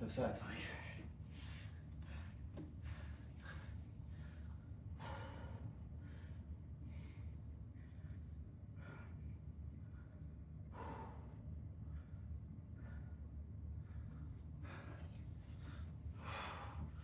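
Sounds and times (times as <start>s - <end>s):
steady low hum: 2.8s - 17.0s
man breathing hard: 10.7s - 17.0s.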